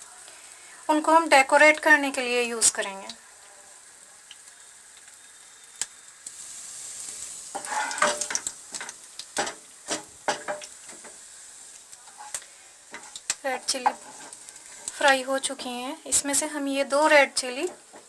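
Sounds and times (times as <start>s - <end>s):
spices sizzling in oil: 0.0s - 18.0s
utensil scraping a pan: 7.4s - 11.2s, 12.1s - 15.8s.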